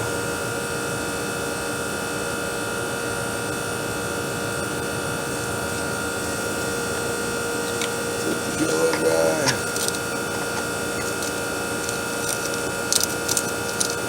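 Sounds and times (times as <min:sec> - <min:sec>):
air conditioning unit humming: 0:03.5 - 0:14.0.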